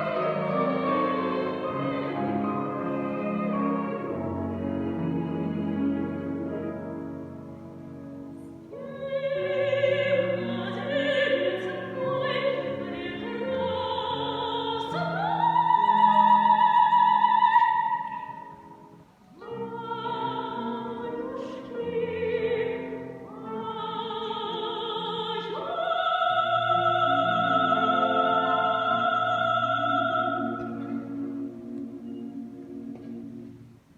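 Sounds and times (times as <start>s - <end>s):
musical accompaniment: 0.0s - 33.9s
woman singing operatically: 8.8s - 18.6s, 19.4s - 31.2s.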